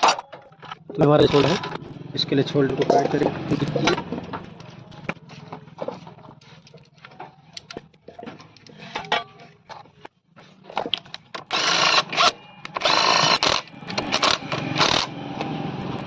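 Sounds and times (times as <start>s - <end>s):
tools clicking and knocking: 0.0s - 2.0s, 2.7s - 5.2s, 5.8s - 15.5s
impact wrench bursts: 0.0s - 5.2s, 10.8s - 16.0s.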